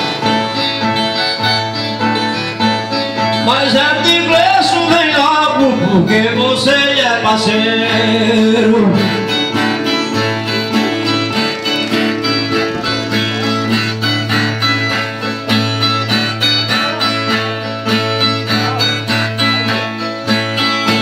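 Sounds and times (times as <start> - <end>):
folk guitar strumming: 0.0 - 21.0.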